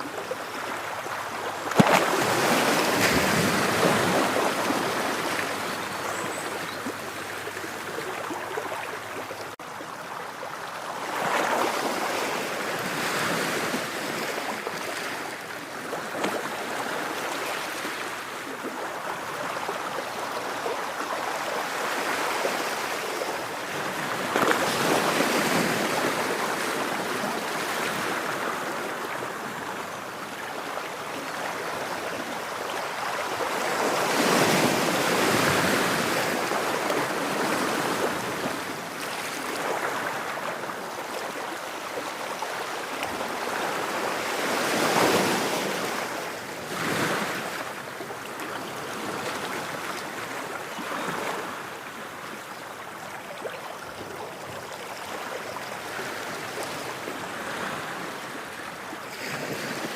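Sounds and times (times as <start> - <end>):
waves breaking and washing in: 0.0 - 59.9.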